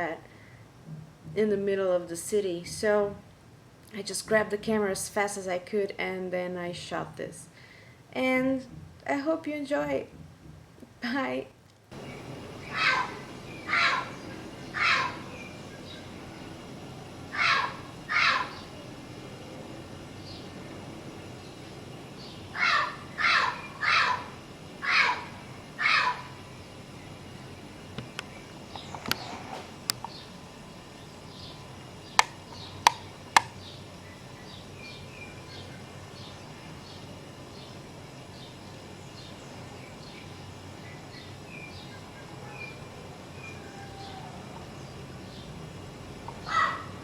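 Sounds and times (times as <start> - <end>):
city background hum: 0.0 - 47.0
bird chirps and tweets: 12.0 - 16.6
bird calling: 12.0 - 30.4, 31.0 - 37.0, 46.3 - 47.0
sharp clicks: 27.9 - 30.2, 32.1 - 33.6.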